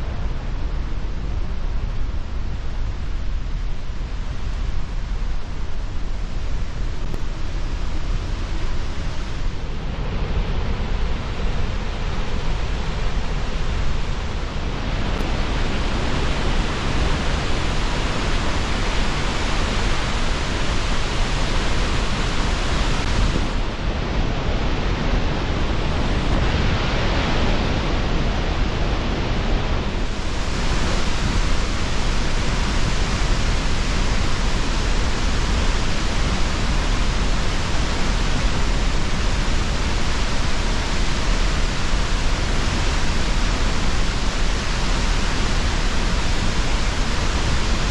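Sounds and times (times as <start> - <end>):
waterfall roaring: 3.7 - 47.9.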